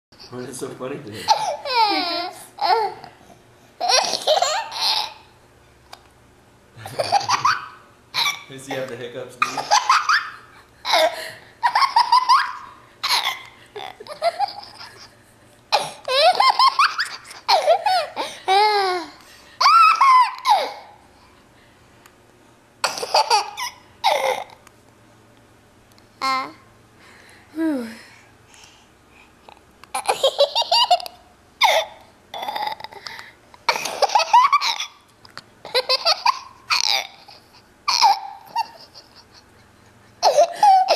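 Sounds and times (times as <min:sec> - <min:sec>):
toddler giggling: 0:01.2 - 0:03.1, 0:03.8 - 0:05.3, 0:06.8 - 0:21.0, 0:22.8 - 0:24.6, 0:29.9 - 0:33.0, 0:33.7 - 0:35.0, 0:35.6 - 0:40.9.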